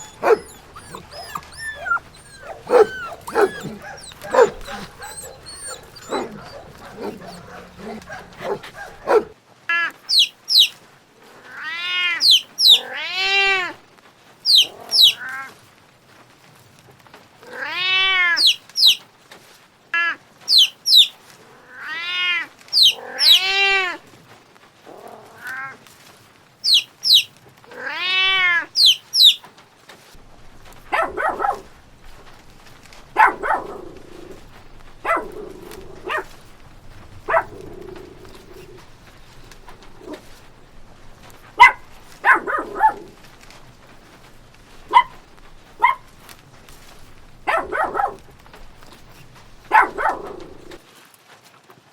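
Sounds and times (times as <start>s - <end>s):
animal calls rising and falling: 0.0s - 9.3s, 30.3s - 50.8s
rough animal calls: 0.0s - 9.3s, 14.5s - 15.3s, 30.2s - 50.8s.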